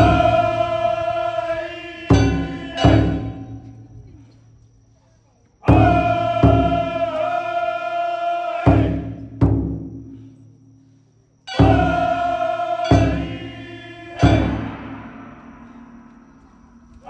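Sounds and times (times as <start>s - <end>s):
long held pitched tone: 0.0s - 3.9s, 11.5s - 17.0s
heavy drum strikes: 0.0s - 4.2s, 5.7s - 7.3s, 8.7s - 10.2s, 11.5s - 17.0s.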